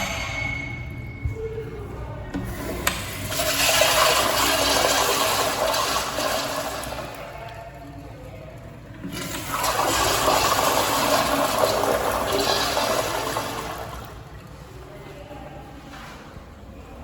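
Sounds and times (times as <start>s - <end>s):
toilet flushing: 2.4s - 14.7s.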